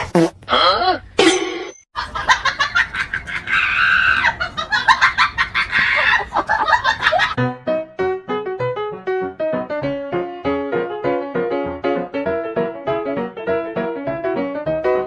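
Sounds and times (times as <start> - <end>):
chickens clucking and squawking: 2.2 - 7.4
piano music: 7.4 - 15.0.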